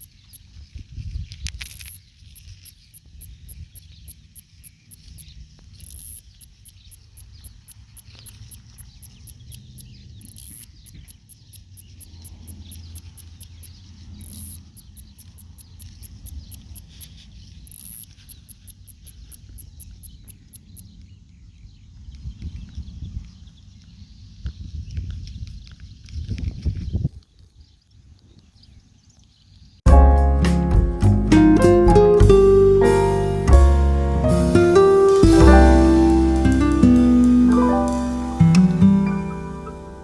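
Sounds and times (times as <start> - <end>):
cicada ticking and buzzing: 0.0 - 0.4, 1.6 - 20.8.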